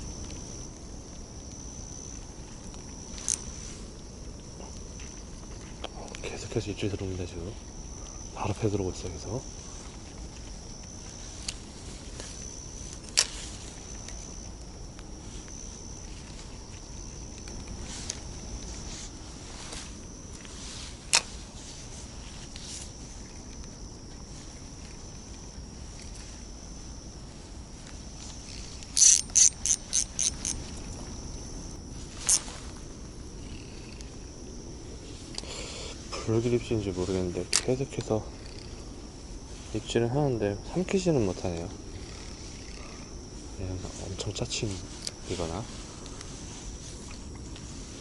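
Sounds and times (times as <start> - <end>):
insects trilling: 0.0 - 48.0
fishing reel ratcheting clicks: 28.4 - 30.6.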